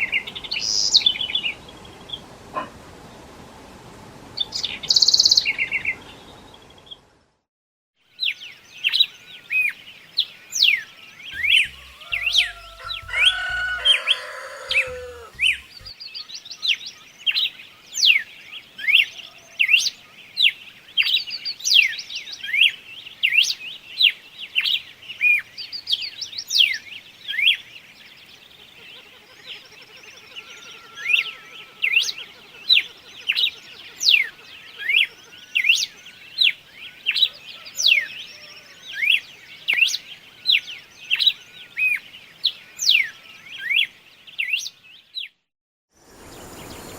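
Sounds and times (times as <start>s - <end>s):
songbirds chirping: 8.0s - 45.4s, 46.0s - 46.9s
faint buzzy trill: 11.4s - 15.9s
low falling bird call: 11.4s - 15.9s.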